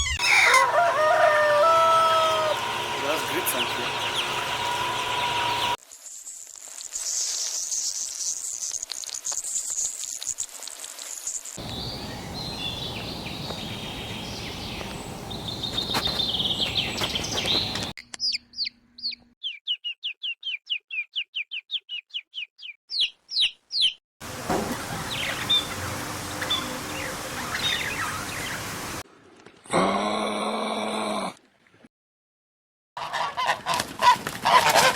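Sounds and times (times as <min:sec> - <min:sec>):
birds chirping: 0:02.2 - 0:05.8, 0:11.6 - 0:24.0, 0:24.7 - 0:29.0
high steady hiss: 0:09.3 - 0:15.8
background ambience: 0:11.6 - 0:17.9.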